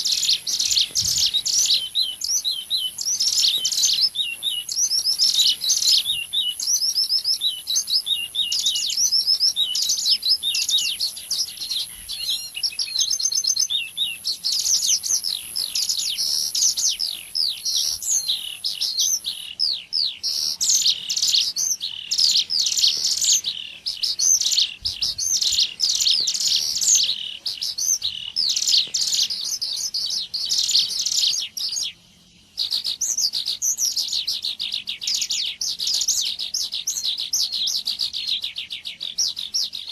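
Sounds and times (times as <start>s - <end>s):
faint steady hiss: 0.0s - 38.9s
bird chirps and trills: 0.0s - 39.9s.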